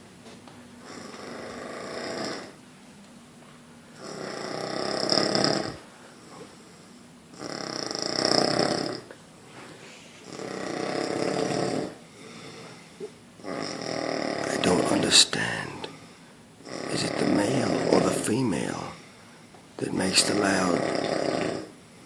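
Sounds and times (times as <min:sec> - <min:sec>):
person snoring loudly: 0:00.8 - 0:02.6, 0:04.0 - 0:06.5, 0:07.3 - 0:09.1, 0:10.2 - 0:12.8, 0:13.4 - 0:15.9, 0:16.6 - 0:19.0, 0:20.2 - 0:21.8.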